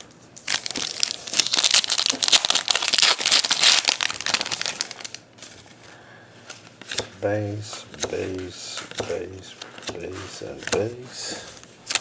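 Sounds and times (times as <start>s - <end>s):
plastic wrapper crinkling: 0.4s - 5.8s.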